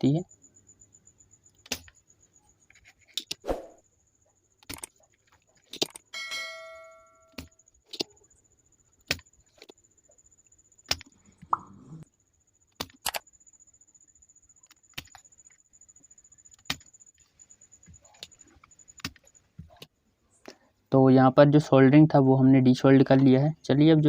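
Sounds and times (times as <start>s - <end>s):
short metallic ring: 6.1s - 7.4s
faint high whine: 6.2s - 19.6s.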